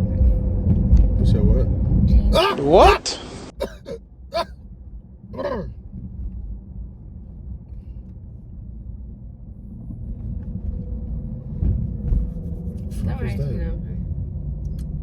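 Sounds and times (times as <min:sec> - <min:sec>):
low road rumble inside car: 0:00.0 - 0:02.4, 0:04.0 - 0:15.0
brief vocal sound: 0:02.4 - 0:04.5.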